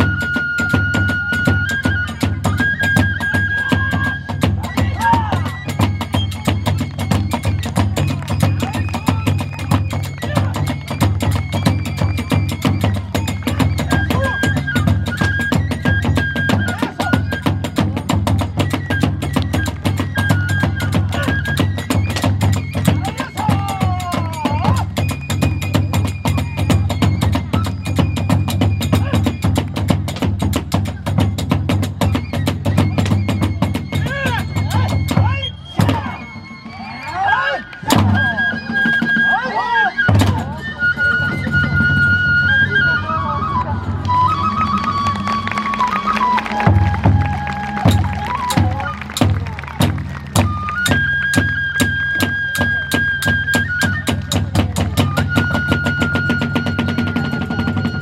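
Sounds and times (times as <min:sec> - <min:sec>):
bamboo flute long notes: 0:00.0 - 0:58.0
drum beat: 0:03.2 - 0:36.2, 0:44.6 - 0:58.0
large drum beating: 0:44.1 - 0:51.6.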